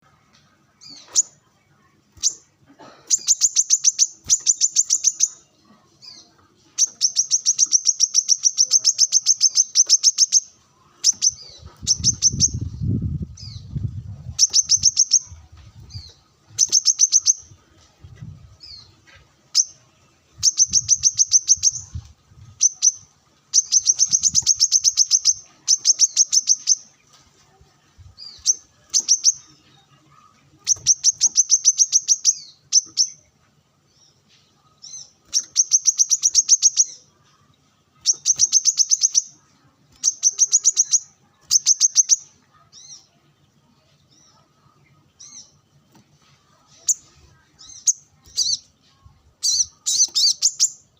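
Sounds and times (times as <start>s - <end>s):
bird singing rattling trills: 3.1s - 17.5s, 20.4s - 27.0s, 28.2s - 29.6s, 30.6s - 33.2s, 34.8s - 37.0s, 38.0s - 43.1s, 46.7s - 48.8s, 49.4s - 50.9s.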